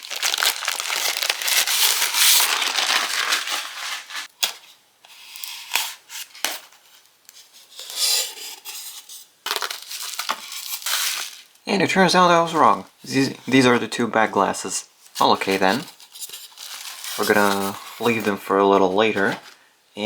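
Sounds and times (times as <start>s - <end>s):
plastic packaging crinkling: 0.0s - 4.6s, 7.8s - 11.6s, 15.0s - 19.6s.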